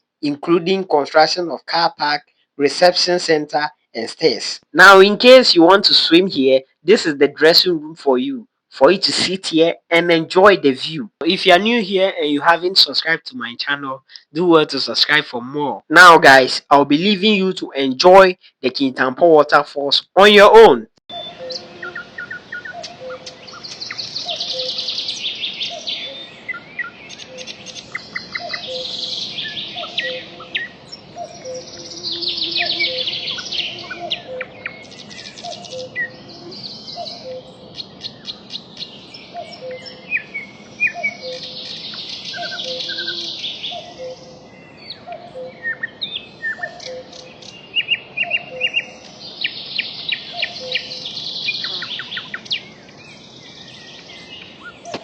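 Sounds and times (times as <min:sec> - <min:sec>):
birds trilling: 0:10.0 - 0:14.8, 0:21.1 - 0:55.0
short bird chirps: 0:21.1 - 0:52.7
low two-note bird call: 0:29.8 - 0:34.5, 0:42.4 - 0:43.4.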